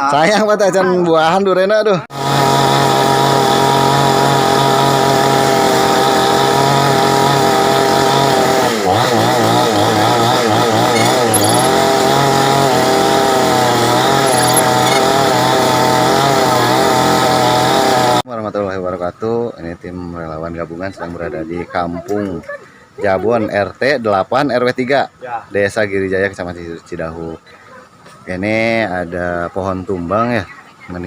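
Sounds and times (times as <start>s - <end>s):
chainsaw cutting wood: 2.1s - 18.2s.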